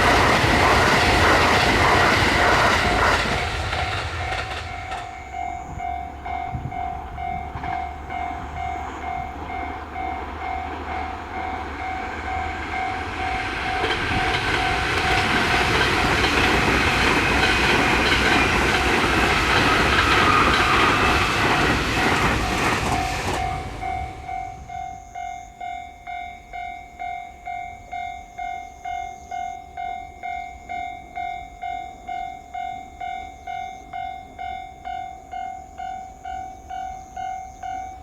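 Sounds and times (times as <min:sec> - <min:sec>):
train passing: 0:00.0 - 0:38.0
level crossing warning bell ringing: 0:02.5 - 0:38.0.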